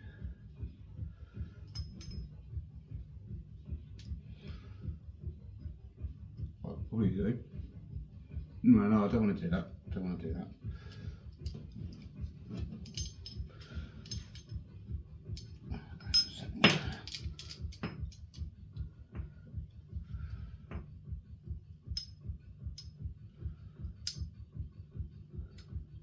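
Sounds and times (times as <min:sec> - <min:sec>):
low pulsing hum: 0:00.0 - 0:26.0
handcuffs and key clinking: 0:01.6 - 0:02.4, 0:03.9 - 0:04.2, 0:10.9 - 0:14.7, 0:15.3 - 0:18.5, 0:21.9 - 0:23.0, 0:23.9 - 0:24.4.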